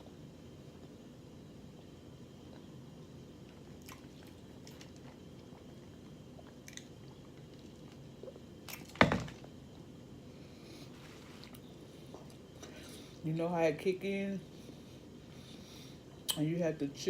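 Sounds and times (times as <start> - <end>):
person chewing food: 3.5 - 8.9.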